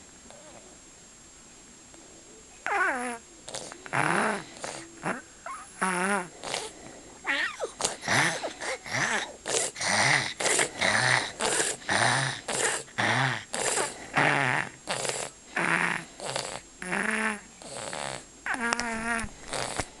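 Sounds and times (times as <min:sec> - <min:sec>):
child's congested snoring breathing: 0:03.5 - 0:18.3, 0:19.0 - 0:20.0.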